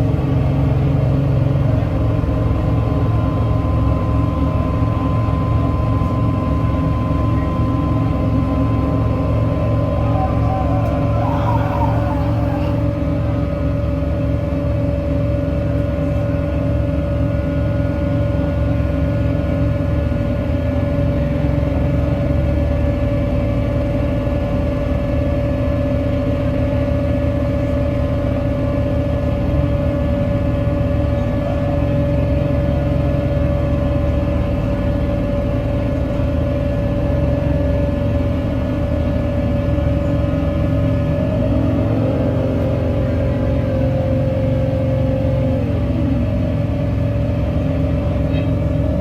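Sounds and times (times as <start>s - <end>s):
steady high tone: 7.7s - 12.9s.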